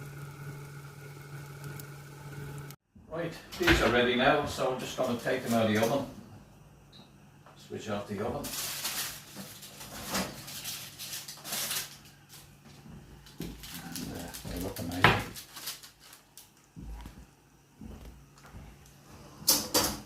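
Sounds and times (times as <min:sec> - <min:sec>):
steady low hum: 0:00.0 - 0:09.7
baking tray scraping and rustling: 0:08.3 - 0:16.3.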